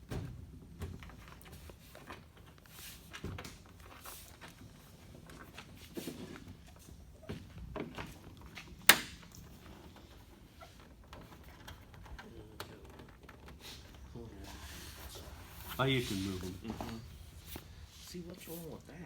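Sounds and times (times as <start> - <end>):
knocks and thumps of handling: 0.0 - 10.2.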